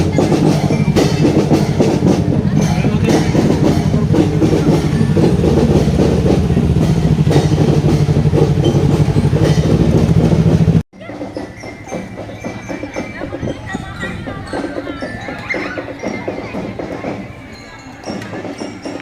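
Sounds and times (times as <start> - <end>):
marching drum band: 0.0 - 19.0
background voices: 0.1 - 7.4
steady low note: 1.2 - 10.8.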